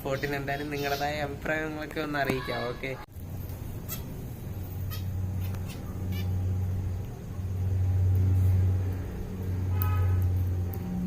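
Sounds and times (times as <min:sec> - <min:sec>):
finches chirping: 0:00.1 - 0:01.3.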